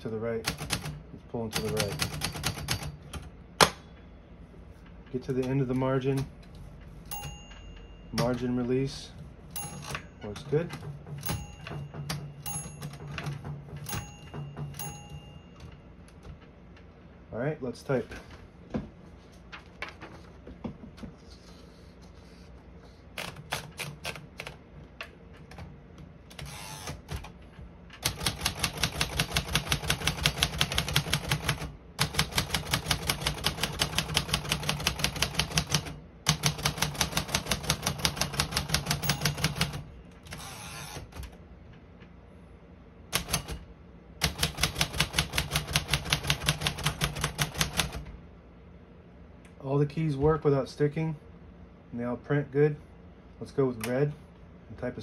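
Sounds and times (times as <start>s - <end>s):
typewriter key strikes: 1.6s - 3.8s, 9.6s - 15.2s, 28.0s - 39.8s.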